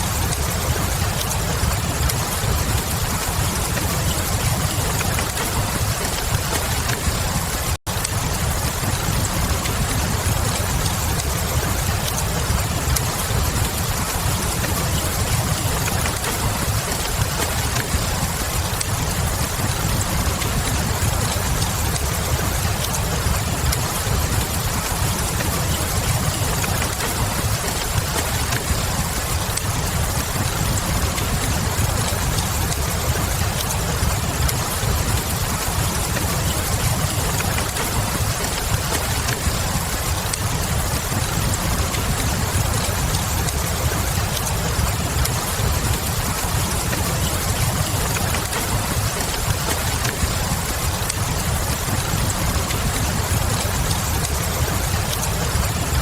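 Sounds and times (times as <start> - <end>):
rain hiss: 0.0 - 56.0
wood fire crackling: 0.0 - 56.0.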